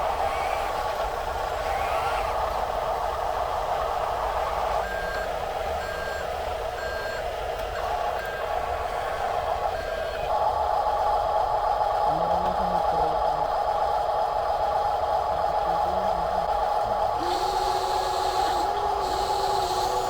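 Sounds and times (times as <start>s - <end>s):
toy truck electric motor whine: 0.0s - 3.1s, 17.0s - 20.0s
short reversing beeps: 4.8s - 8.5s.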